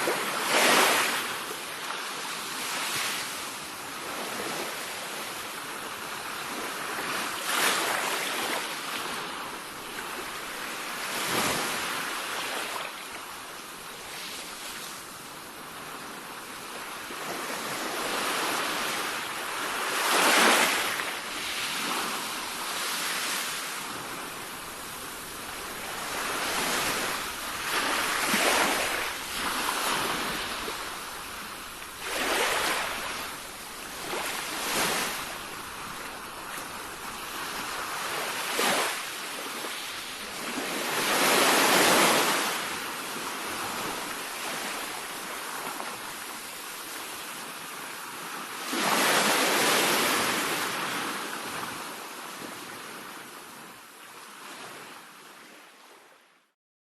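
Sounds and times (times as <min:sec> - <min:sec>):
sea waves breaking: 0:00.0 - 0:01.5, 0:17.1 - 0:46.6.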